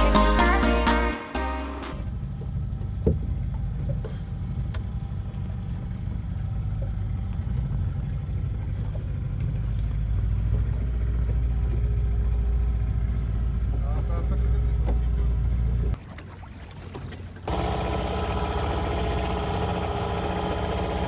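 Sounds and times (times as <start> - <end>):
boat motor running: 16.0 - 21.0.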